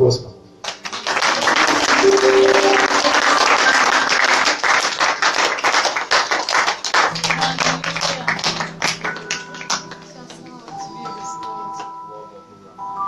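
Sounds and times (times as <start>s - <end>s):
crowd applauding: 0.6s - 12.0s
held music notes: 1.6s - 4.6s, 7.1s - 13.0s.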